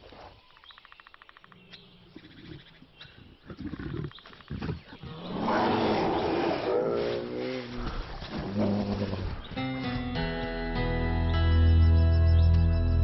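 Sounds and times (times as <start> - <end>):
bears growling and roaring: 3.4 - 9.4.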